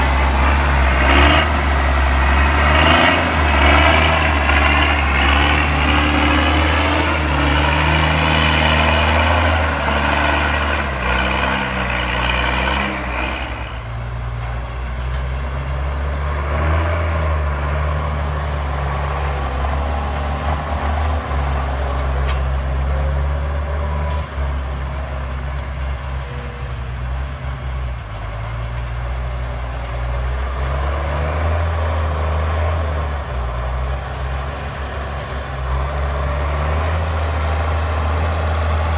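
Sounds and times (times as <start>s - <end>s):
high turbo whine: 0.0s - 14.0s
diesel tractor engine under load: 0.0s - 38.9s.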